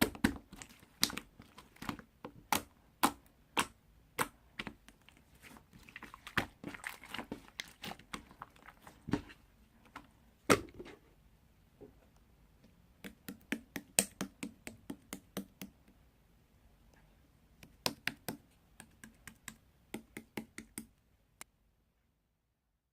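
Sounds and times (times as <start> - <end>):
sharp clicks and taps: 17.6 - 20.9.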